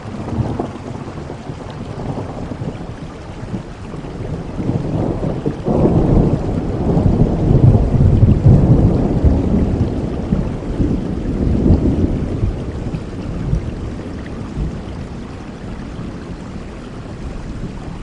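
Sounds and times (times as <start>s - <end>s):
rain falling: 0.0s - 18.0s
rolling thunder: 0.0s - 18.0s.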